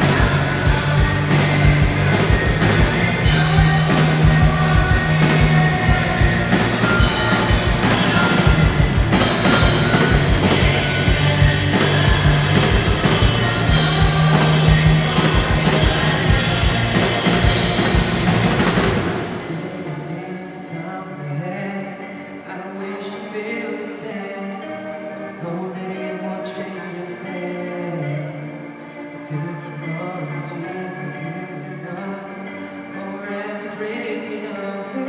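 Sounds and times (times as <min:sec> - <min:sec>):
low bass notes: 0:00.0 - 0:19.2
drum kit beat: 0:00.0 - 0:19.4
rock band playing live: 0:00.0 - 0:20.1.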